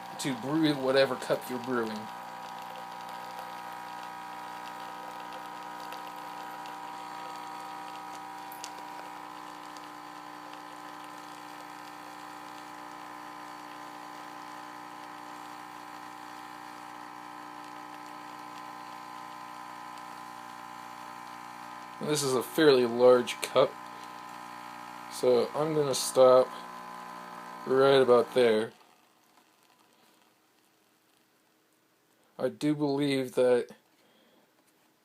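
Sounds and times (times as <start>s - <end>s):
coffee machine pump humming: 0.0s - 30.4s.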